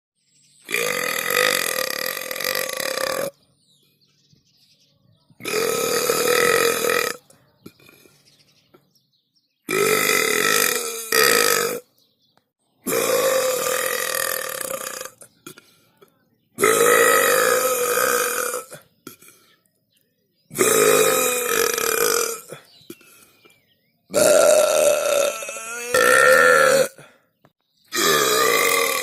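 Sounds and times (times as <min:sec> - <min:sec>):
person burping: 0:00.7 - 0:03.4, 0:05.4 - 0:08.1, 0:09.7 - 0:11.9, 0:12.8 - 0:15.7, 0:16.6 - 0:19.4, 0:20.5 - 0:23.2, 0:24.1 - 0:27.2, 0:27.9 - 0:29.0.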